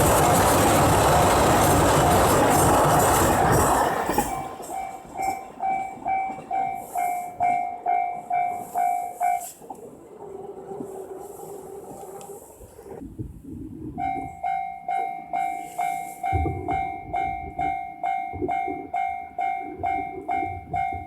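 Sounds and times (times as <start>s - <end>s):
train rumbling: 0.0s - 21.0s
level crossing alarm bell: 3.5s - 9.6s, 14.0s - 21.0s.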